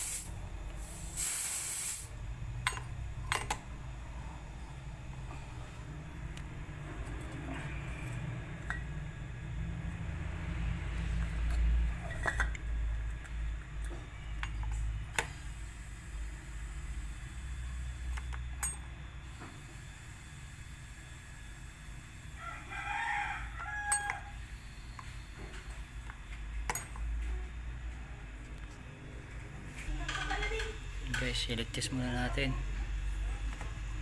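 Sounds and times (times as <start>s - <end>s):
rooster crowing: 22.4s - 24.4s.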